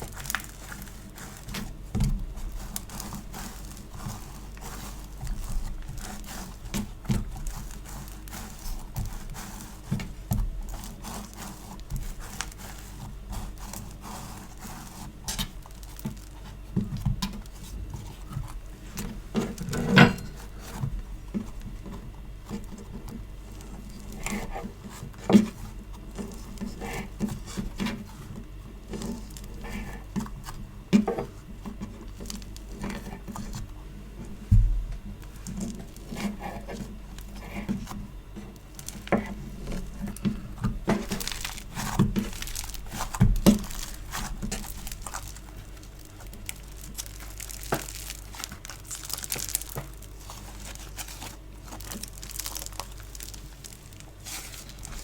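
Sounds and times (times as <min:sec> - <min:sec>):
hands squishing sticky slime: 0:38.6 - 0:55.0.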